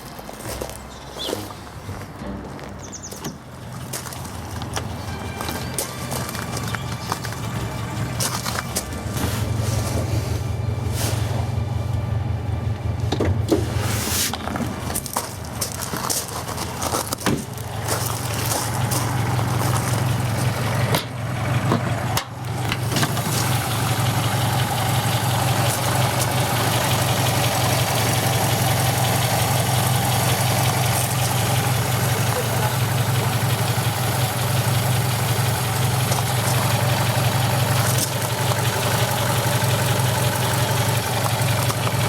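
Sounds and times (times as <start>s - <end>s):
car engine idling: 1.2s - 42.0s.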